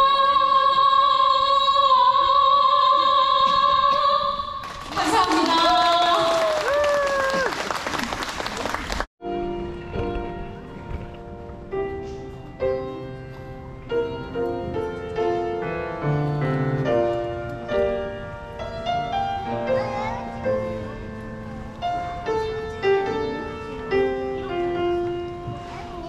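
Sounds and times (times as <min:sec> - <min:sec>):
slow gentle piano tune: 0:09.2 - 0:26.0.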